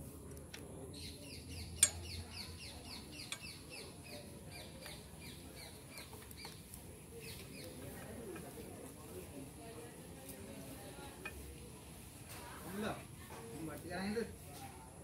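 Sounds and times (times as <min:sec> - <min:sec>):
bird chirping: 0:00.9 - 0:06.6.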